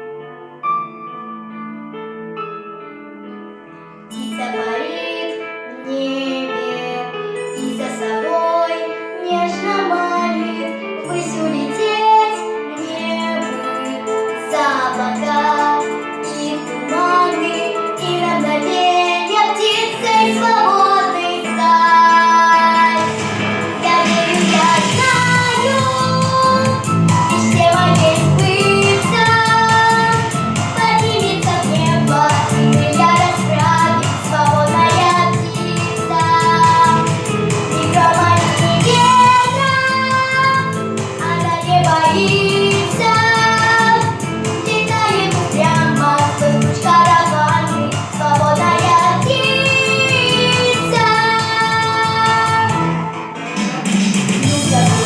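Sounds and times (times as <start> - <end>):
instrumental accompaniment: 0.0 - 55.0
girl singing: 4.2 - 52.9, 54.4 - 55.0
low rhythmic beat: 23.1 - 55.0.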